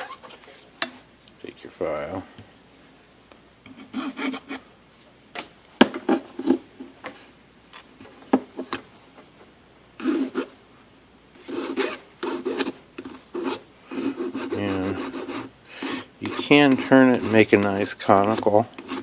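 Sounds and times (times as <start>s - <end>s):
file rasping on metal: 3.7s - 4.6s, 10.0s - 10.5s, 11.4s - 19.0s.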